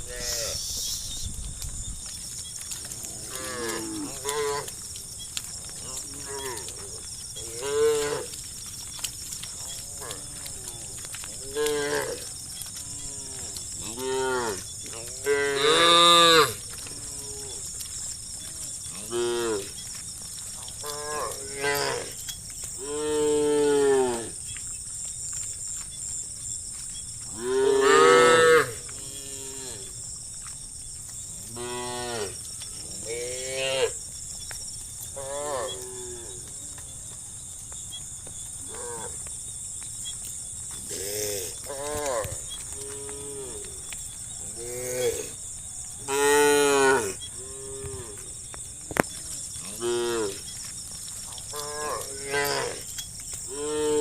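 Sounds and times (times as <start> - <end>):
cows mooing: 2.8 - 4.8, 5.7 - 8.7, 9.6 - 17.6, 18.5 - 19.8, 20.8 - 22.2, 27.3 - 29.9, 46.0 - 48.3, 49.6 - 50.4, 51.5 - 52.9, 53.5 - 54.0.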